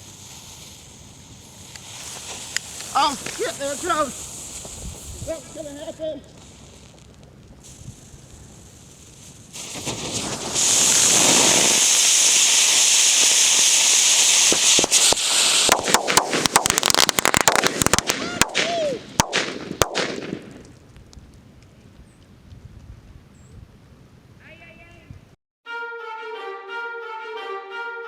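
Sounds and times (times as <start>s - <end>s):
firework whistle: 0.0s - 6.9s, 7.6s - 20.0s
fireworks spraying hiss: 0.0s - 20.8s
firecracker cracks: 0.0s - 22.9s.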